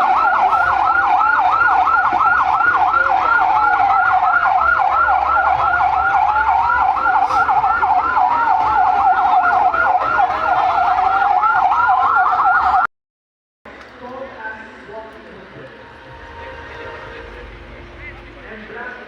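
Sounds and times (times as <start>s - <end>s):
siren wail rising and falling: 0.0s - 12.9s
siren yelp warbling: 0.0s - 12.9s.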